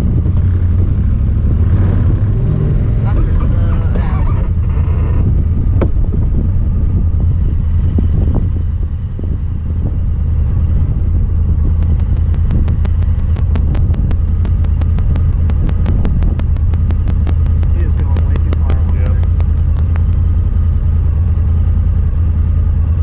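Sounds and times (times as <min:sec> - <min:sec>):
vehicle engine running: 0:00.0 - 0:23.0
rapid regular camera clicking: 0:11.8 - 0:20.4.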